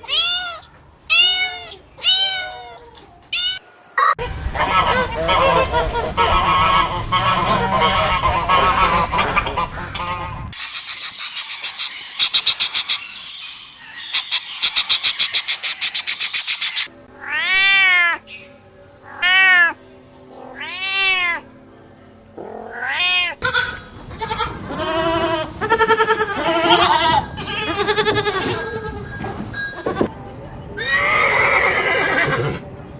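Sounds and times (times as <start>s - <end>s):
cat meowing: 20.5s - 21.4s, 22.7s - 23.6s.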